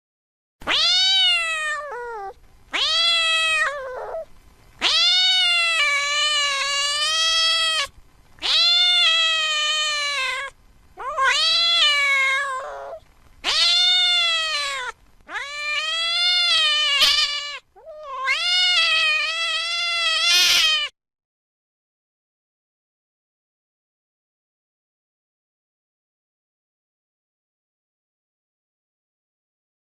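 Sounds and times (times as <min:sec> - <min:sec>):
cat meowing: 0:00.6 - 0:20.9.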